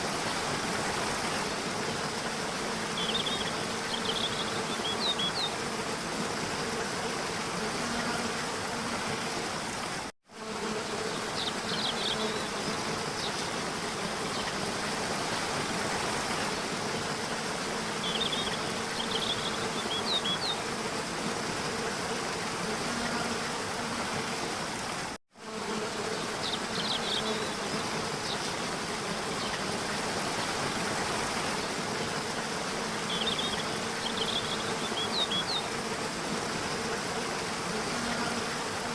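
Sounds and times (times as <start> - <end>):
insects buzzing: 0.0 - 38.9.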